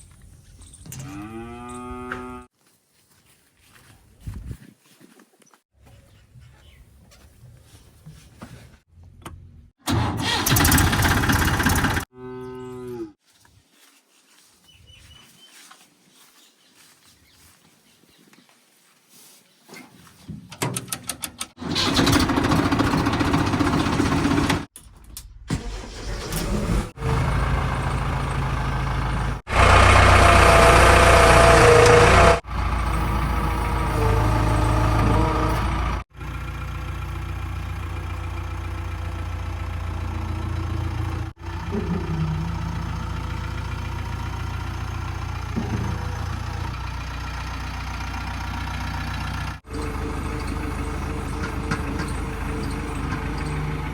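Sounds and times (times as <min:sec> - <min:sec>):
heavy diesel engines running: 0:09.9 - 0:12.1, 0:21.6 - 0:24.7, 0:25.5 - 0:53.9.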